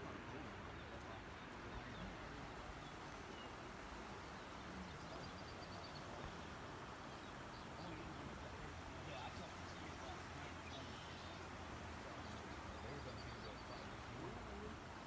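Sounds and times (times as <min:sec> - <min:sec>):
faint bird chirps: 0:10.6 - 0:11.4.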